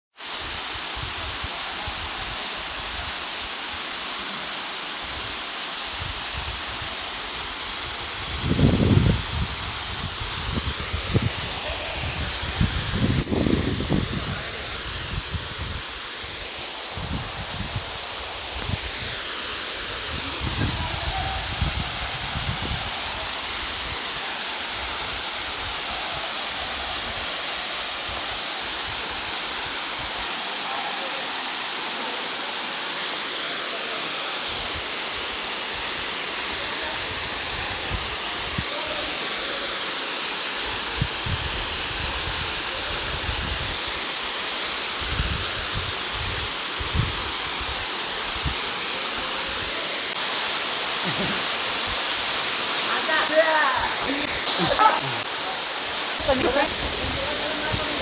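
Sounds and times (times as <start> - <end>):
waterfall rushing: 0.2 - 58.0
wind buffeting microphone: 8.1 - 16.0, 19.9 - 24.0, 55.9 - 58.0.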